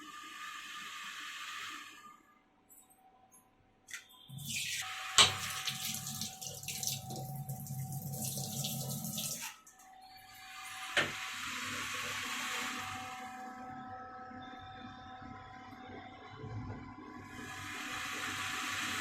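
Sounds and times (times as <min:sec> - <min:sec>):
tap water running into sink: 0:04.3 - 0:09.8.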